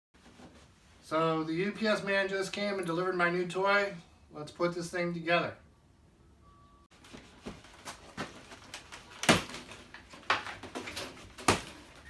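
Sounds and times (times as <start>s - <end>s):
cardboard carton being handled: 7.0s - 12.0s.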